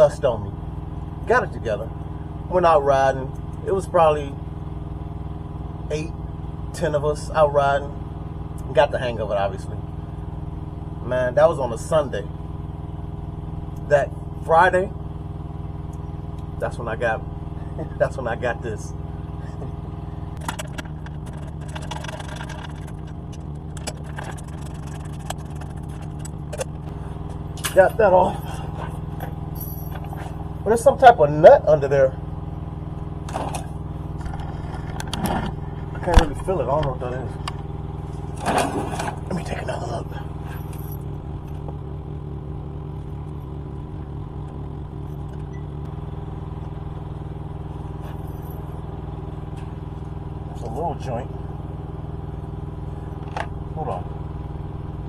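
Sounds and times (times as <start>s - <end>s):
low mechanical hum: 0.0s - 55.0s
hand tools clicking and clinking: 20.4s - 26.7s, 27.6s - 30.4s.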